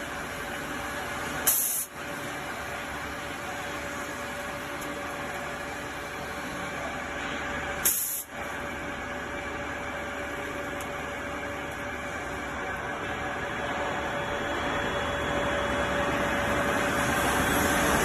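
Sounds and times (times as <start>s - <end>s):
sharp hiss: 1.5s - 1.9s, 7.8s - 8.3s.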